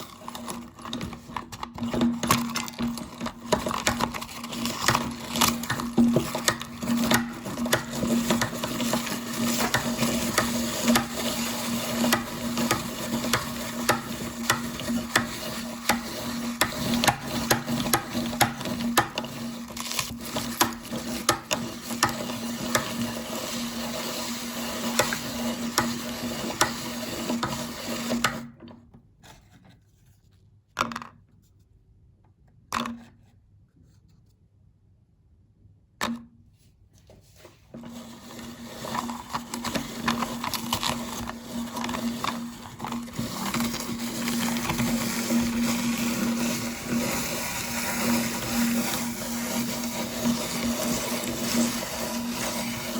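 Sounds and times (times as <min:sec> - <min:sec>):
cookies crackling and snapping: 0:00.0 - 0:23.2, 0:38.6 - 0:52.9
meat grinder motor hum: 0:00.0 - 0:28.6, 0:37.7 - 0:52.9.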